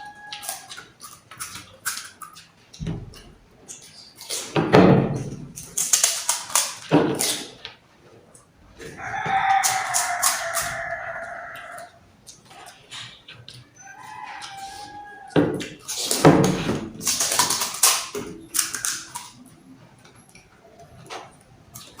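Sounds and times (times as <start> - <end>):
rooster crowing: 0.0 - 0.8, 8.8 - 12.0, 13.6 - 15.6
close knocks and crunchy rustles: 0.6 - 13.6.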